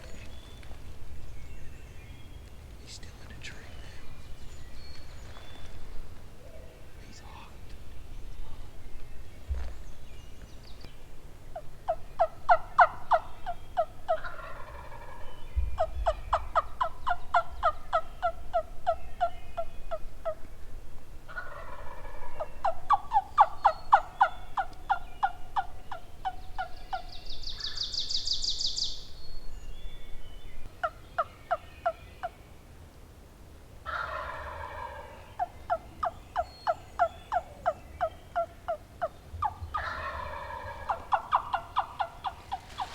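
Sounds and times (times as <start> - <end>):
turkeys gobbling: 11.5 - 20.5, 21.3 - 27.8, 33.8 - 42.9.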